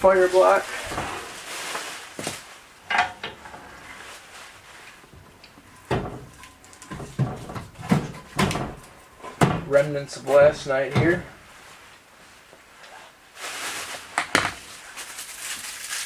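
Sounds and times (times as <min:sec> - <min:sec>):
wood knocking and clattering: 0:02.9 - 0:03.6, 0:05.2 - 0:09.8.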